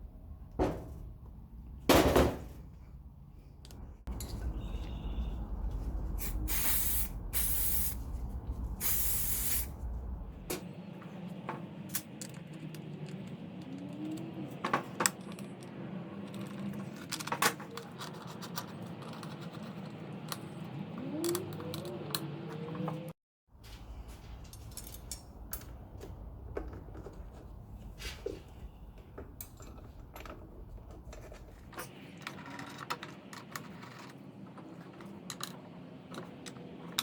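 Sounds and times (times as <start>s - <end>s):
short hissing sprays: 6.2s - 8.1s, 8.8s - 9.8s
deep low rumble: 7.1s - 10.5s.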